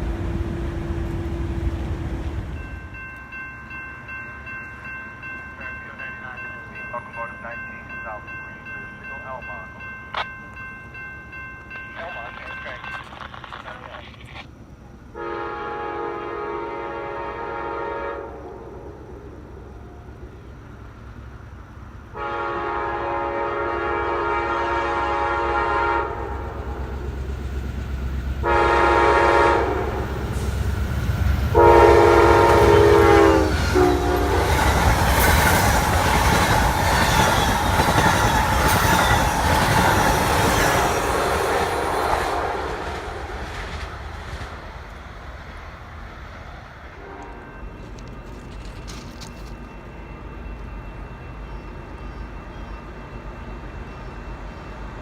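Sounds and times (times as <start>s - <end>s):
train passing with rumble: 0.0s - 55.0s
train horn blasts: 15.1s - 19.0s, 22.1s - 26.8s, 28.4s - 30.7s, 31.5s - 35.6s, 38.6s - 43.0s, 47.0s - 47.7s
rail clatter: 30.0s - 45.6s.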